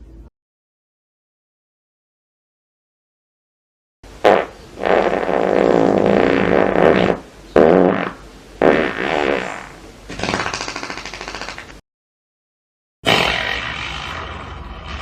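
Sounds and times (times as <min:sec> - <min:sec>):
farting sounds: 0:04.2 - 0:11.8, 0:13.0 - 0:15.0.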